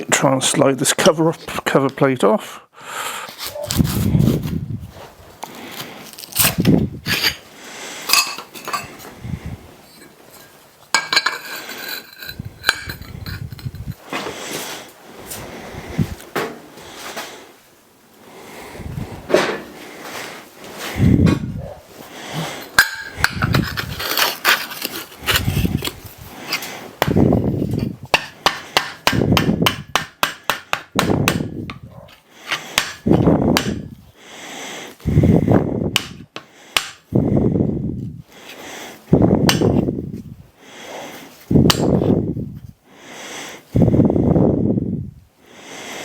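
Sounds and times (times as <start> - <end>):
hammer striking steel plate: 28.1 - 31.5.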